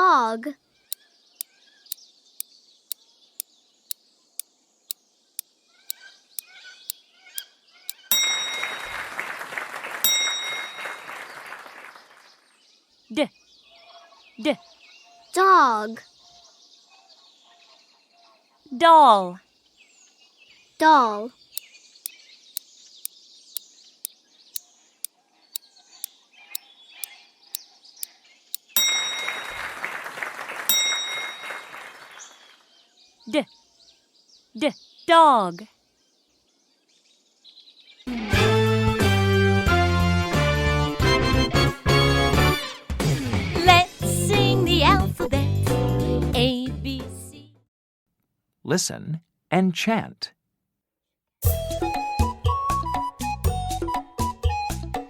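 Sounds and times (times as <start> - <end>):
faint birdsong: 0.5 - 8.8, 11.1 - 18.8, 19.4 - 30.4, 31.2 - 38.1
bright chime ringing: 8.1 - 8.9
chime: 8.1 - 8.9, 10.1 - 11.0, 28.8 - 29.6, 30.7 - 31.6
burst of applause: 8.4 - 12.4, 29.1 - 32.6.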